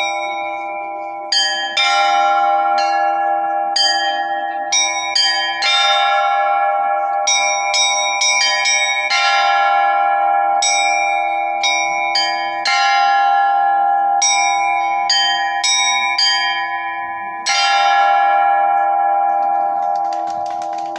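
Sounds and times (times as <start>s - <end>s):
loud bell strikes: 0.0s - 20.9s
small church bells ringing: 0.0s - 20.9s.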